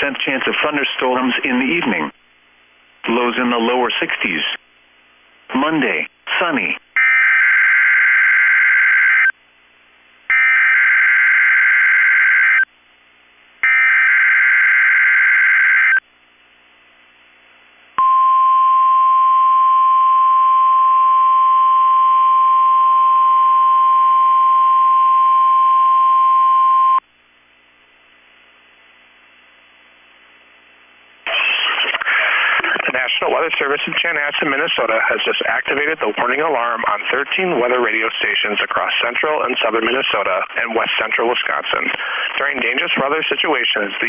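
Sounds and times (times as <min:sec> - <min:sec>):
steady alarm tone: 0:10.3 - 0:12.7, 0:13.6 - 0:16.0.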